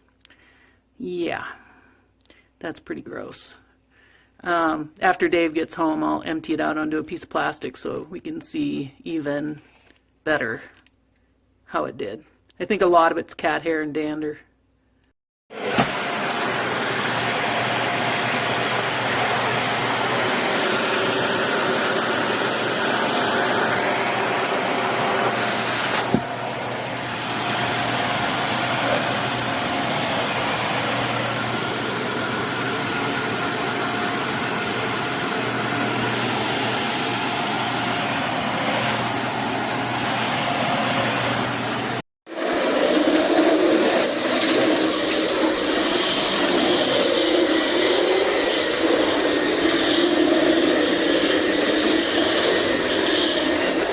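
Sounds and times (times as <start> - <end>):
upright vacuum cleaner running: 15.5 - 53.9.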